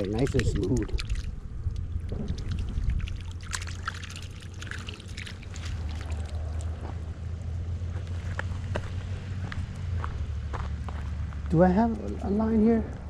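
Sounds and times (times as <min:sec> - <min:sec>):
small clicks and splashes: 0:00.0 - 0:07.0
water dripping and trickling: 0:00.0 - 0:07.7
steady low rumble: 0:00.0 - 0:13.0.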